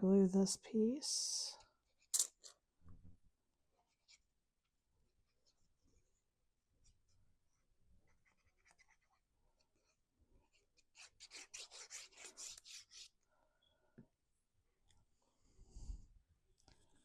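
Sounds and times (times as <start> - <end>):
scratchy strokes on cardstock: 8.0 - 13.2.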